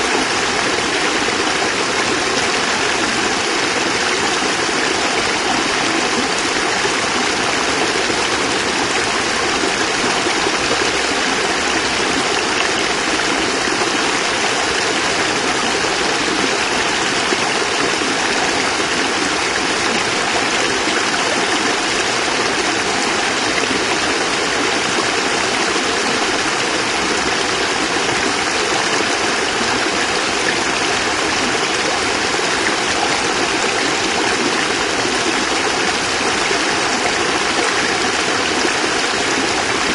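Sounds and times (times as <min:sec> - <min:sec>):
water splashing over rocks: 0:00.0 - 0:39.9.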